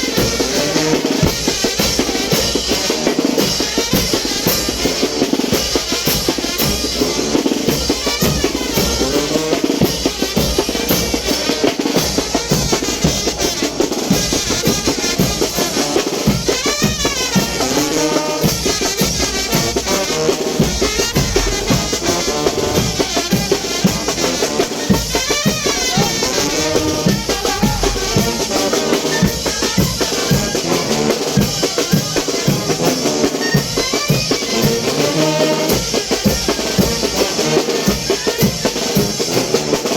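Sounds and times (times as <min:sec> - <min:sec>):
brass band playing: 0:00.0 - 0:39.9
cymbals: 0:00.0 - 0:39.9
snare drum: 0:00.0 - 0:39.9
bass drum: 0:19.0 - 0:29.4.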